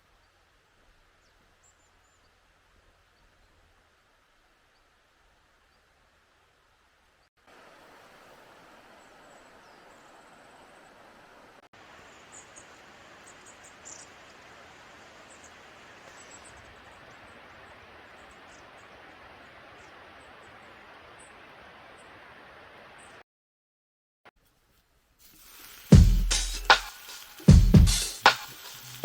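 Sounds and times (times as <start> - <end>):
river rushing: 7.4 - 23.2.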